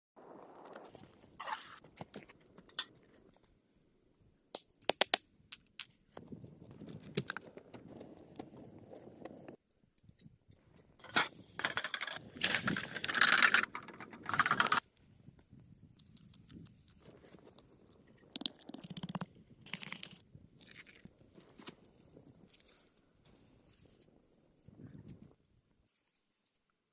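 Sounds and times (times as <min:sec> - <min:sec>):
stones scraping and crunching: 0:06.2 - 0:09.4.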